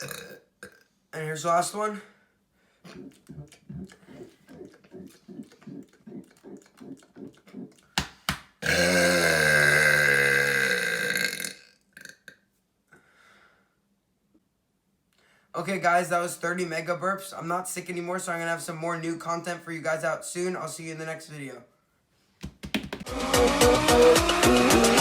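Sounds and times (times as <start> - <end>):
throaty gulps: 0.0 - 0.8, 2.8 - 8.0, 8.6 - 12.1
man belching: 0.0 - 0.9, 8.6 - 12.4.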